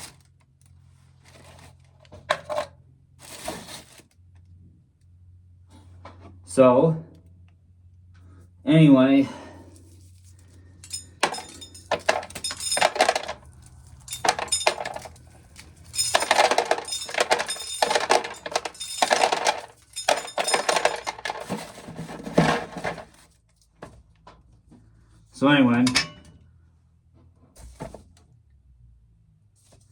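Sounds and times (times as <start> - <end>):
corn kernels clattering into a can: 10.9 - 23.2.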